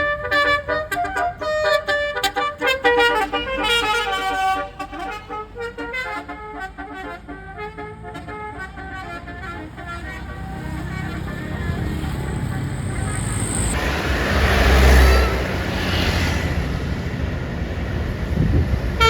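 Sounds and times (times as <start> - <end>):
bus air horn melody: 0.0 - 13.7, 14.8 - 16.2.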